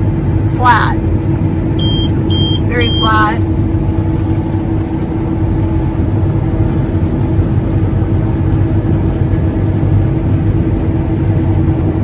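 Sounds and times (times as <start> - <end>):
combine harvester running: 0.0 - 12.0.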